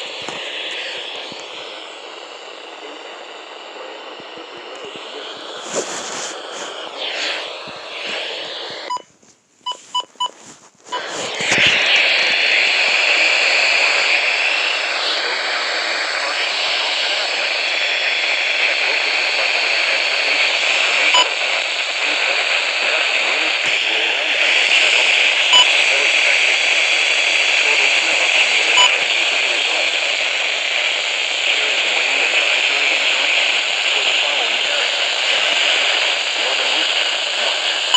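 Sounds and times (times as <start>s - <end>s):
radio static hiss: 0.0s - 37.9s.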